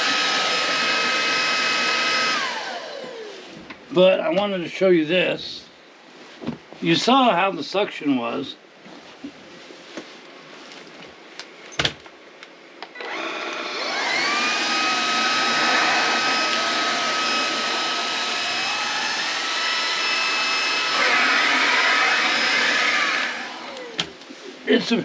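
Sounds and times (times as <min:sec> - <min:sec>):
vacuum cleaner motor whining: 0:00.0 - 0:03.5, 0:13.0 - 0:24.3.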